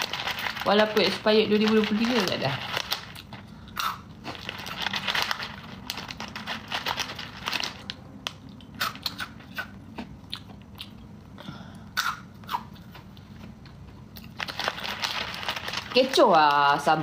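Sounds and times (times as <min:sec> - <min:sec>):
crunchy snack being chewed: 0:01.6 - 0:11.1.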